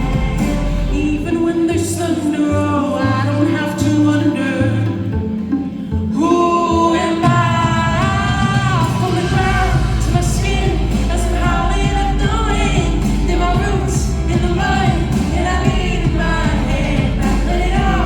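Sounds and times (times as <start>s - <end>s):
deep bass: 0.0s - 5.2s, 7.2s - 18.0s
backing music: 0.0s - 18.0s.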